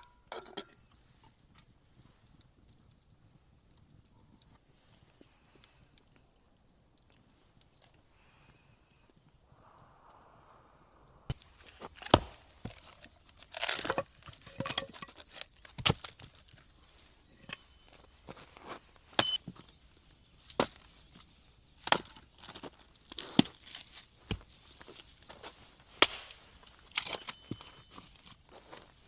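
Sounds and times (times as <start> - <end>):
wood tearing and crackling: 11.3 - 17.0, 21.8 - 28.7
chopping strikes on wood: 11.6 - 16.4, 19.2 - 19.4, 26.0 - 27.3.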